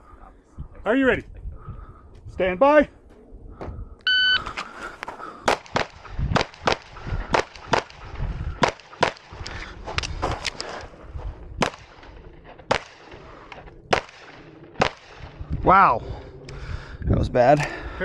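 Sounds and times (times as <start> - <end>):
pistol shots echoing: 5.4 - 8.0, 8.6 - 9.3, 12.7 - 13.2, 13.9 - 15.3.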